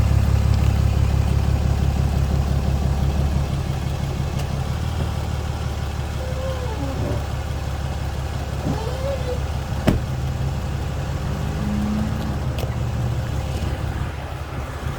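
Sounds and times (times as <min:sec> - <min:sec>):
pickup engine idling: 0:00.0 - 0:14.9.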